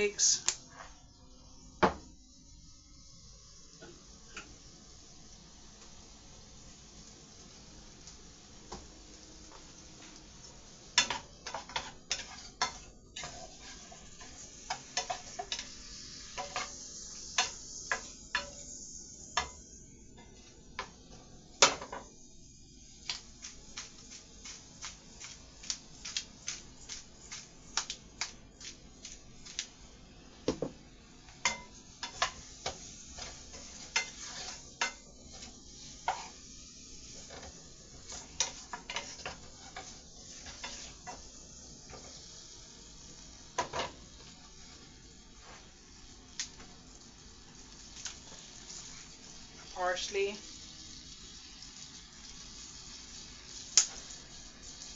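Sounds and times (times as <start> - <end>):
faint frying sizzle: 0.0 - 54.9
utensil scraping a pot: 11.4 - 14.4, 33.2 - 36.4, 38.1 - 41.1.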